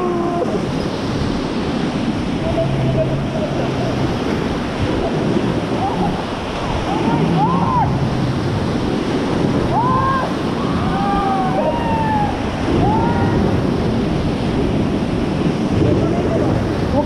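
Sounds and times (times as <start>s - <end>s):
river rapids rushing: 0.0s - 17.0s
wind buffeting microphone: 0.0s - 17.0s
people shouting: 6.9s - 8.0s, 9.7s - 13.5s.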